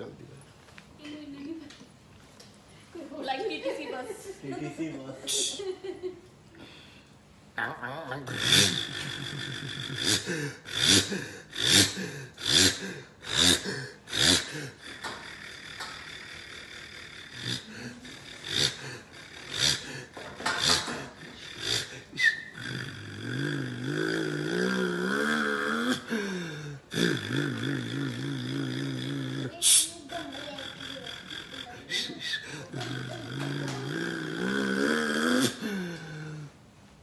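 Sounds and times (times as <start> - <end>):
man imitating a bus engine: 8.3 - 36.5.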